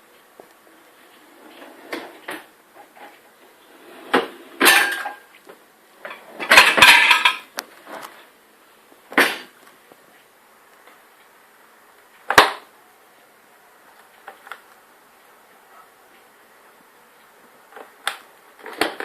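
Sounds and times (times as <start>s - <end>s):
dishes and cutlery clattering: 4.2s - 5.2s, 6.1s - 7.5s.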